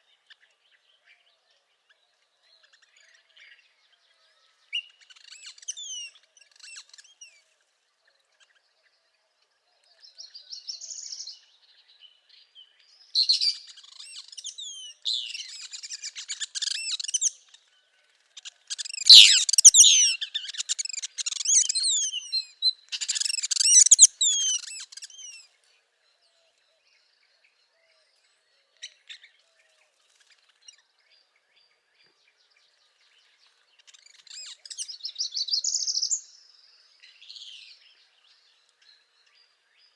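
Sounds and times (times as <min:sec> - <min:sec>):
songbirds singing: 0:00.0 - 0:39.9
rising buzzy bird phrase: 0:19.1 - 0:20.1.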